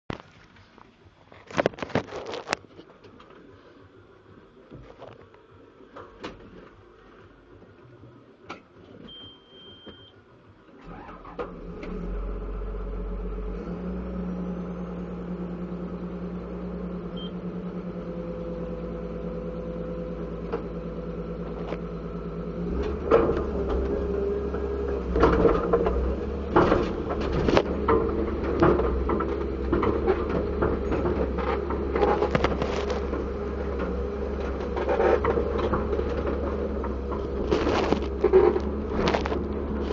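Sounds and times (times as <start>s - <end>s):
short beep: 9.1s - 10.2s
diesel engine starting and idling: 10.7s - 39.9s
knocks and clanks: 25.1s - 39.9s.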